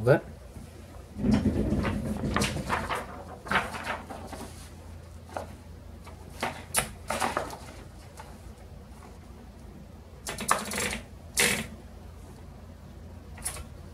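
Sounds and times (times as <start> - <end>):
typewriter clicks and clunks: 10.2 - 11.7.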